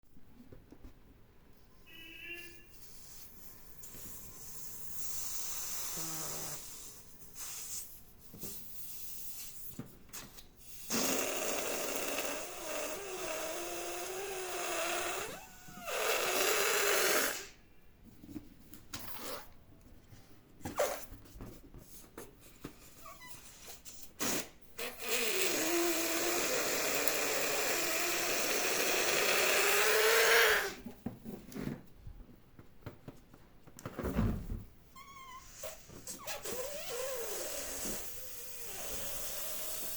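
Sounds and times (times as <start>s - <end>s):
air hissing out of balloon: 2.7s - 9.7s, 10.6s - 17.6s, 23.4s - 30.8s, 35.5s - 39.9s.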